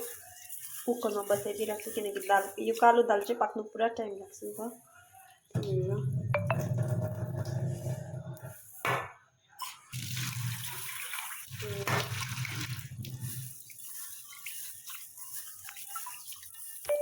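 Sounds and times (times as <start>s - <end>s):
water running from a tap: 0.0s - 3.3s, 9.6s - 17.0s.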